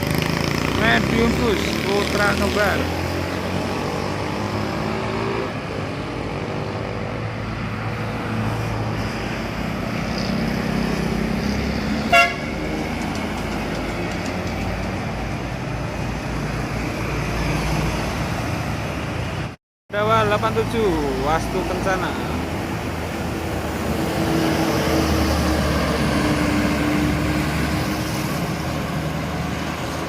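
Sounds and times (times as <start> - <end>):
road and traffic noise: 0.0 - 30.0
sharp horn toot: 12.1 - 12.6.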